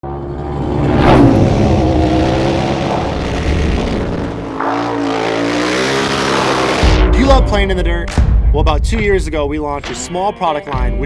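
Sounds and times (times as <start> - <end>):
vehicle engine revving: 0.0 - 7.2.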